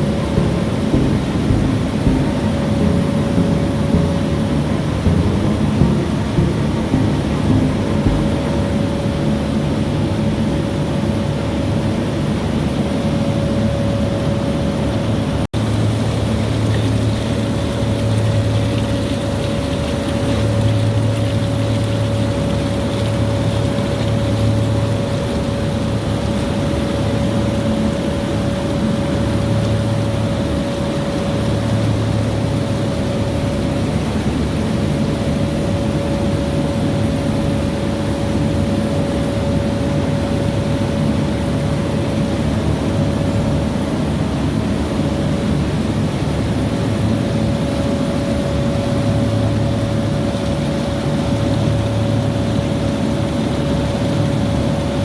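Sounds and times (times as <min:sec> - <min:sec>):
machinery low hum: 0:00.0 - 0:10.5
machinery whine: 0:00.4 - 0:09.6.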